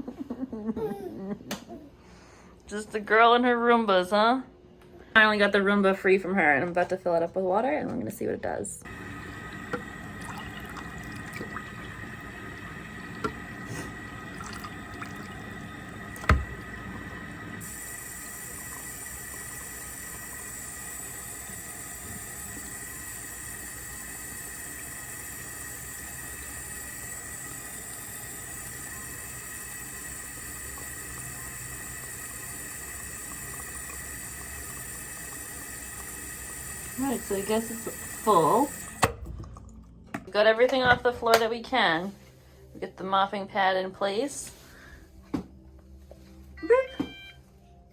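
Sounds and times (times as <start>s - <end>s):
water running into a tank: 8.8s - 39.8s.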